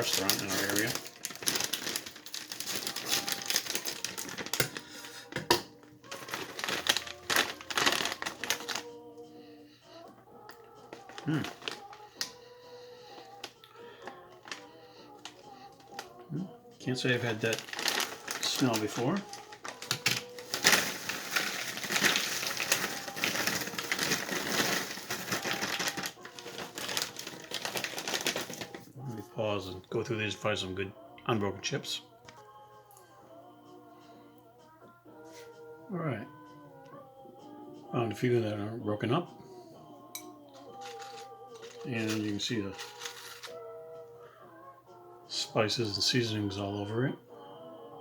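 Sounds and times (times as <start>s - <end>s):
chips rattling inside bag: 0.0s - 5.1s, 6.0s - 8.9s, 10.9s - 12.4s, 13.0s - 16.1s, 17.1s - 28.9s, 40.6s - 43.6s
chip bag crinkling: 0.0s - 9.1s, 10.4s - 16.2s, 17.0s - 28.9s, 40.6s - 43.8s.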